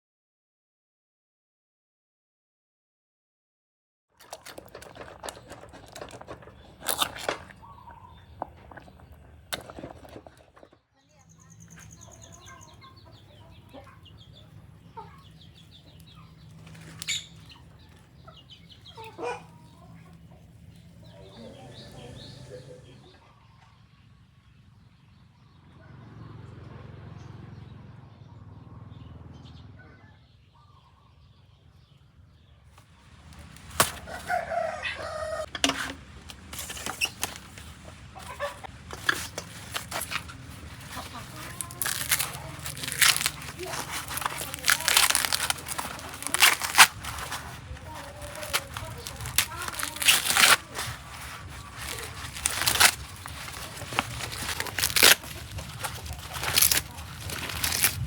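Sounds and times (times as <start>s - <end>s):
dry rustling and tearing: 4.2s - 10.7s, 15.4s - 18.2s, 33.3s - 58.0s
chicken clucking: 4.2s - 10.8s, 11.6s - 23.6s, 34.0s - 35.5s, 37.6s - 44.6s
sharp clicks and knocks: 35.5s - 37.5s.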